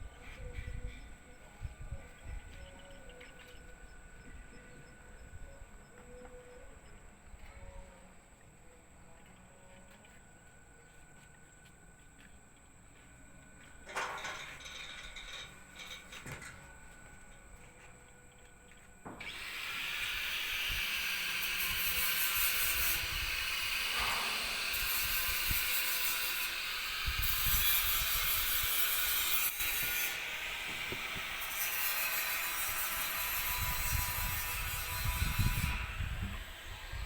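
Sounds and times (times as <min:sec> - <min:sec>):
angle grinder on steel: 0:19.2 - 0:37.0.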